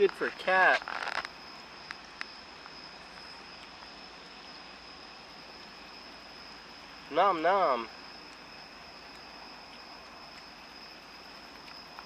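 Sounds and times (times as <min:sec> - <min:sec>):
steady hiss: 0:00.0 - 0:12.0.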